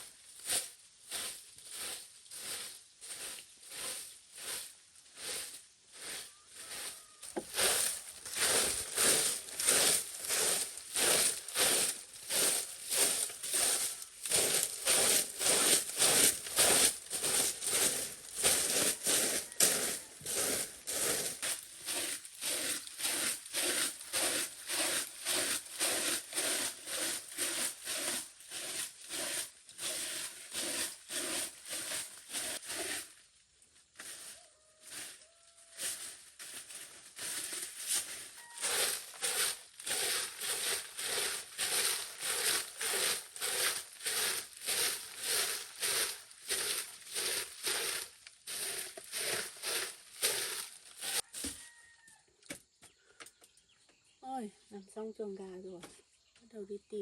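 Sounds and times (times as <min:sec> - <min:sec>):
hand saw rasping: 0:21.9 - 0:33.0.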